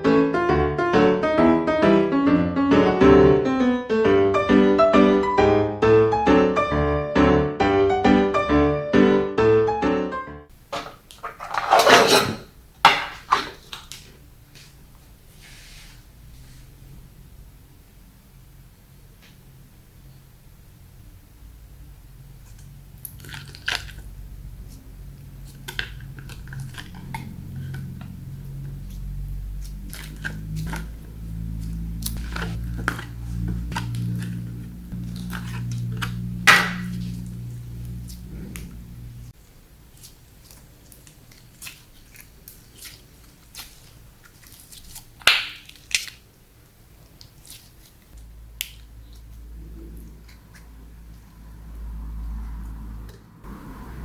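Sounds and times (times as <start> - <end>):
low steady hum: 10.5 - 52.6
slime squished by hand: 25.4 - 38.7, 39.8 - 46.4, 47.0 - 51.2.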